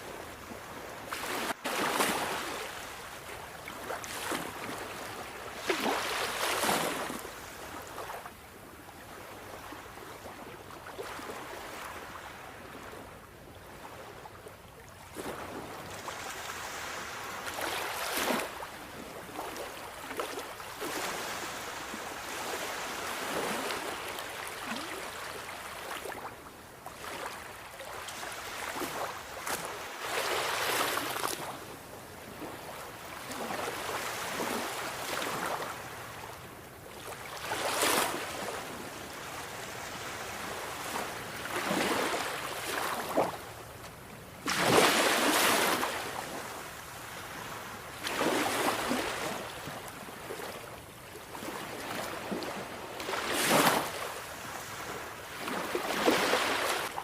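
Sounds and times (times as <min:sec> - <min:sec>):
sea waves breaking: 0:37.0 - 0:43.5, 0:44.4 - 0:50.6, 0:51.3 - 0:57.0.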